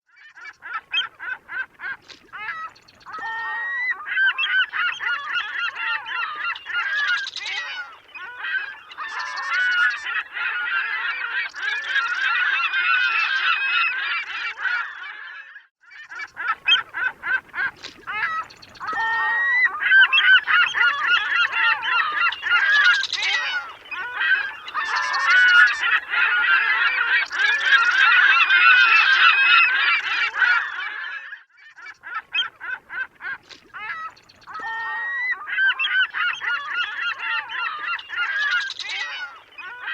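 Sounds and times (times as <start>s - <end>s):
gulls calling: 16.1s - 31.1s, 31.9s - 39.9s.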